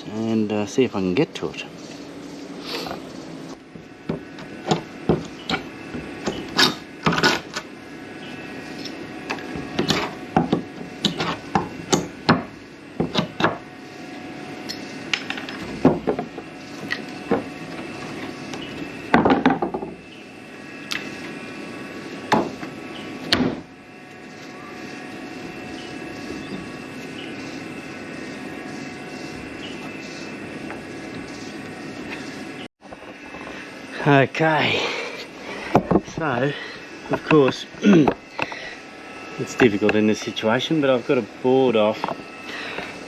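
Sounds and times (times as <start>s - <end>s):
wooden boards knocking and clattering: 9.6s - 13.6s, 15.2s - 16.5s, 19.1s - 20.0s.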